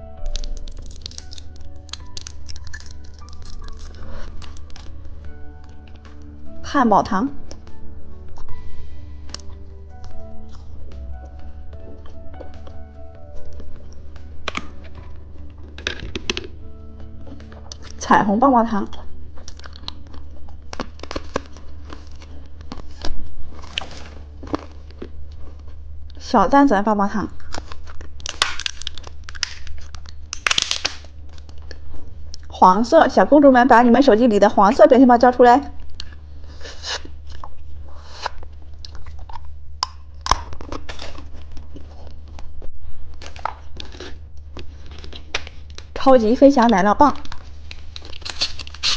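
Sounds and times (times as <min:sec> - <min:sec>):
plastic wrappers crinkling: 0:00.0 - 0:06.5, 0:18.8 - 0:26.2, 0:27.3 - 0:32.6, 0:35.8 - 0:48.9
steady low hum: 0:00.0 - 0:48.9.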